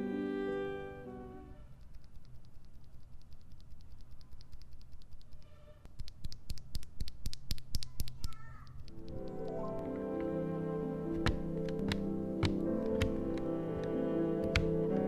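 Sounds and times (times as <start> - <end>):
keyboard switch clacking: 6.0 - 10.3, 11.1 - 15.0.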